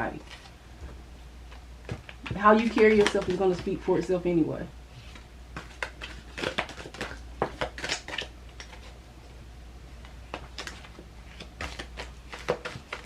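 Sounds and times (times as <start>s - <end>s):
cards being shuffled: 1.5s - 3.8s, 4.9s - 9.0s, 10.0s - 13.0s.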